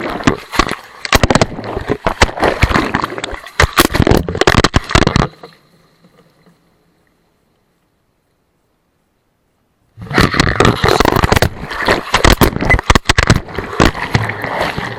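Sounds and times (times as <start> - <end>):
water sloshing: 0.0 - 5.6, 10.0 - 14.9
knocks and clunks: 10.2 - 14.9.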